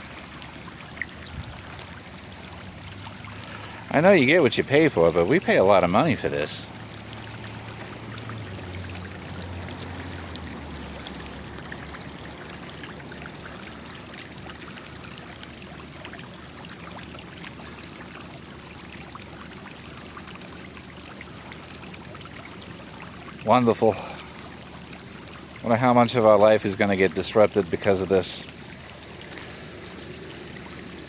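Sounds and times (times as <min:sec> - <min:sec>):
water running across street: 0:00.0 - 0:31.0.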